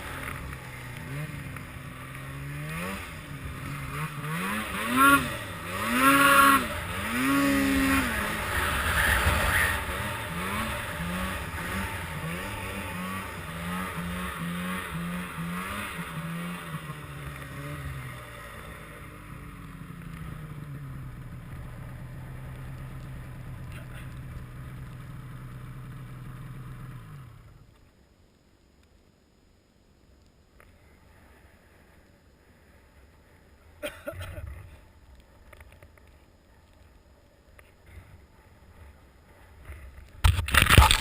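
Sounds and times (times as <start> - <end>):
snowmobile engine revving: 0.0 - 19.6.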